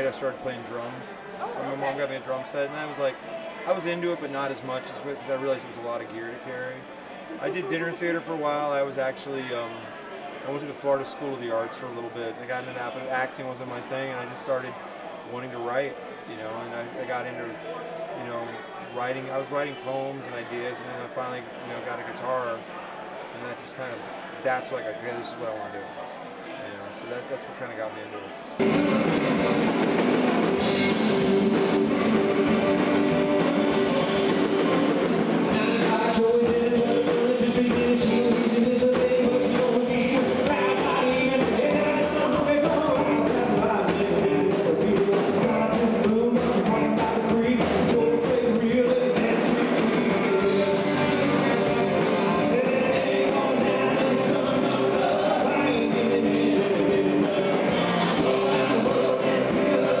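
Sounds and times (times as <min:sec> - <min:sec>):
guitar: 0:00.0 - 1:00.0
band playing rock and roll: 0:28.6 - 1:00.0
person singing: 0:30.6 - 1:00.0.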